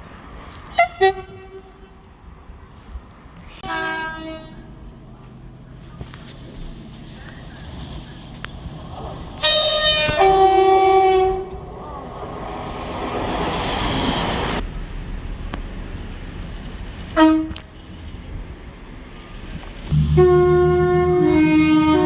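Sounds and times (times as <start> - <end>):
train passing: 0.0 - 22.0
train horn: 0.7 - 2.2, 3.5 - 14.3, 17.1 - 17.7, 19.9 - 22.0.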